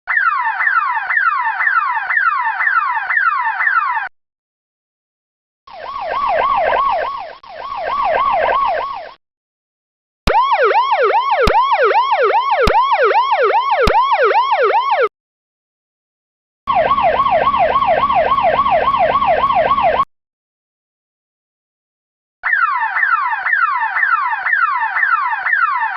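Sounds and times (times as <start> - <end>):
police siren yelping: 0.1 - 4.1, 5.7 - 9.2, 10.3 - 15.1, 16.7 - 20.1, 22.4 - 25.9.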